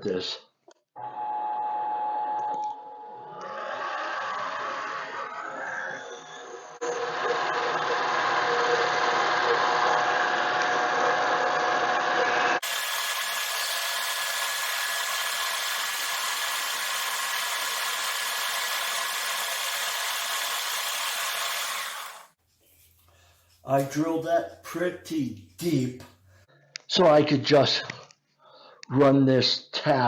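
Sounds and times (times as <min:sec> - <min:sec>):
lathe motor whine: 0:01.0 - 0:22.4
drill cutting plastic: 0:06.8 - 0:22.4.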